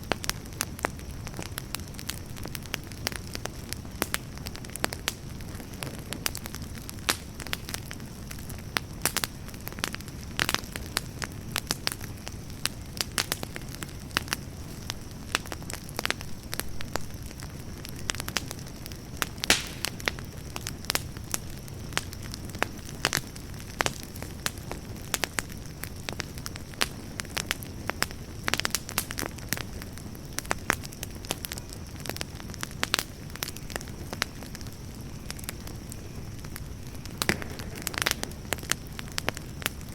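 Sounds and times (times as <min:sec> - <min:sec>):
campfire low rumble: 0:00.0 - 0:39.9
wood crackling and popping: 0:00.0 - 0:39.9.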